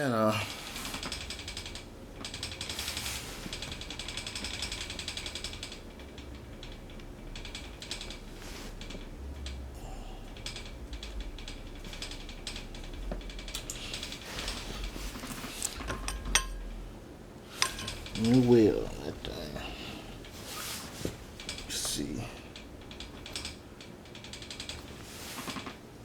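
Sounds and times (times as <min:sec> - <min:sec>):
rapid ratcheting clicks: 0:00.0 - 0:26.0
metal clicks and handling: 0:17.5 - 0:18.4.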